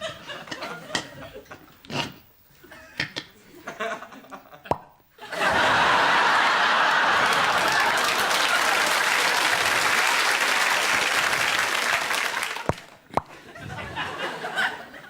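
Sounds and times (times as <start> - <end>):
audience chuckling: 5.2 - 15.0
audience applause: 5.4 - 13.0.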